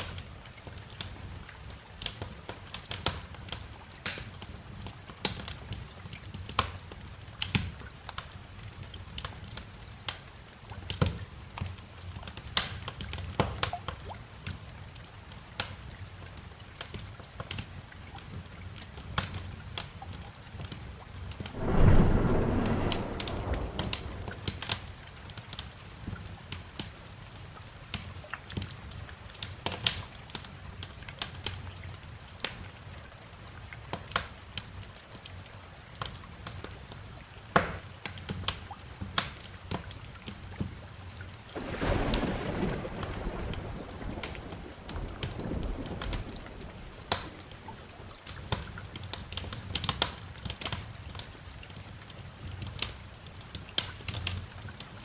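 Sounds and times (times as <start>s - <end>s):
steady rain: 0.0s - 55.0s
wood fire crackling and popping: 21.5s - 25.0s, 41.6s - 54.9s
thunder rumbling: 21.5s - 25.1s, 41.6s - 48.2s.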